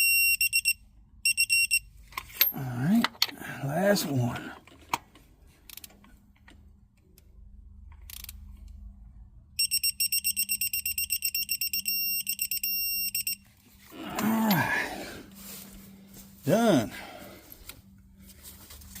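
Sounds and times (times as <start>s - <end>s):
electronic beeps: 9.6s - 13.4s.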